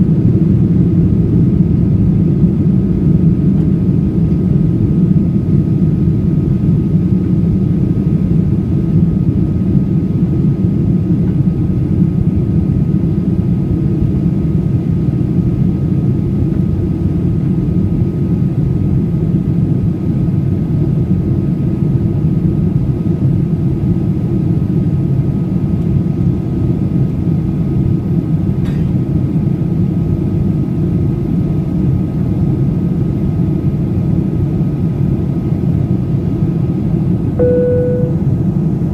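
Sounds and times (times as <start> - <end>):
jet engine cabin drone: 0.0 - 38.9
faint steady high tone: 37.4 - 38.4.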